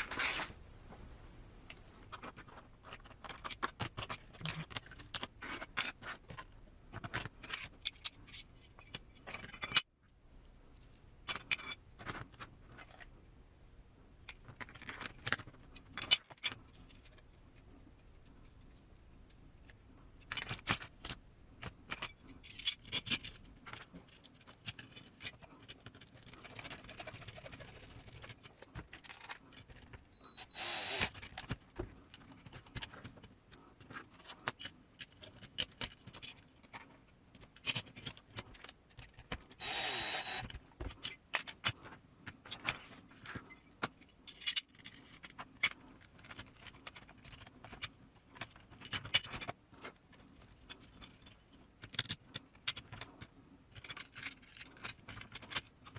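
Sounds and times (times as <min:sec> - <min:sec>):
electric screwdriver whirring: 0:30.2 - 0:31.2, 0:39.6 - 0:40.5.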